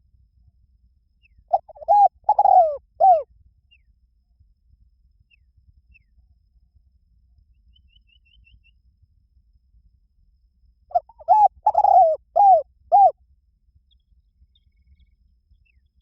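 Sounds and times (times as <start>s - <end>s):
small bird chirping: 1.2s - 3.9s, 7.5s - 8.8s, 10.9s - 13.1s, 13.9s - 16.0s
dove cooing: 1.5s - 3.2s, 10.9s - 13.1s.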